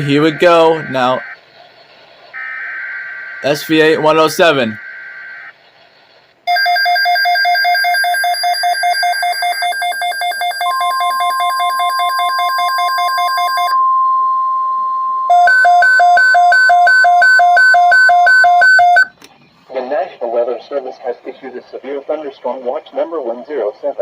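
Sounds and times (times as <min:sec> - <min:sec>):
loud slow alarm beeps: 0:06.5 - 0:19.1
rapid two-tone alarm beeping: 0:06.5 - 0:19.1
steady warning alarm tone: 0:06.5 - 0:19.1.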